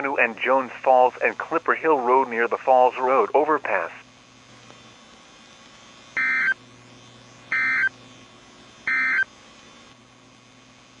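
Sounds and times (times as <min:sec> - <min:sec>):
faint steady hum: 0:00.0 - 0:11.0
digital data tone bursts: 0:06.2 - 0:06.6, 0:07.5 - 0:07.9, 0:08.8 - 0:09.3.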